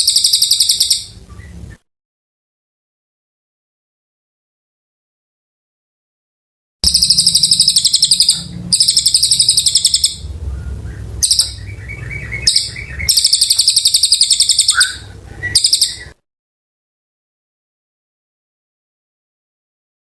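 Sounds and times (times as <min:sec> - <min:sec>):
songbird trilling: 0:00.0 - 0:01.6, 0:06.8 - 0:16.2.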